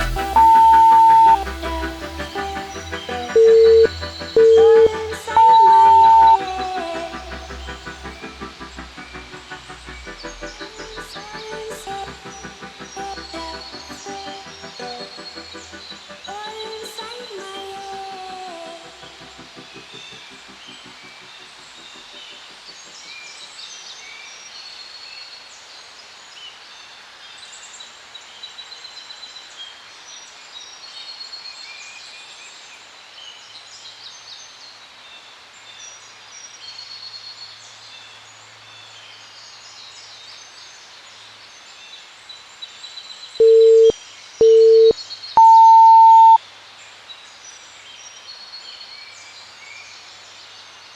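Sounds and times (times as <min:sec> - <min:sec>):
birds chirping: 0:00.0 - 0:01.7, 0:02.6 - 0:08.2
interval timer beeps: 0:00.3 - 0:01.4, 0:03.4 - 0:06.6, 0:43.4 - 0:46.4.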